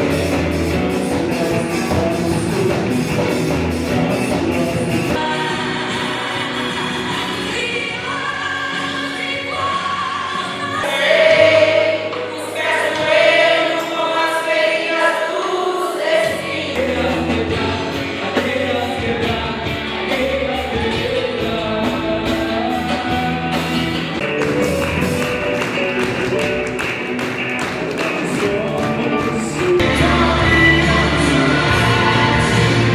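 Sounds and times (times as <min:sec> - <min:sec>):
drums steady beat: 0:00.0 - 0:05.2, 0:16.8 - 0:31.1
gospel group singing: 0:00.0 - 0:32.9.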